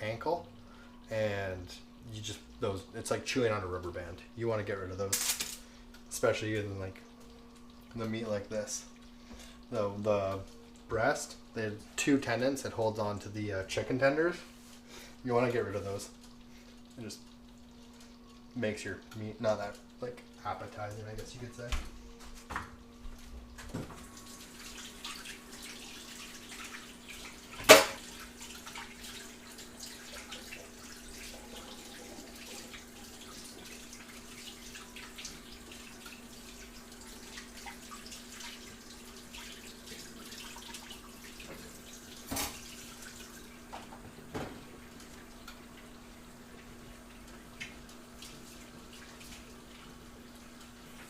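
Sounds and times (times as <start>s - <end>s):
tap running into sink: 21.2s - 24.1s, 27.5s - 28.1s, 41.4s - 44.8s.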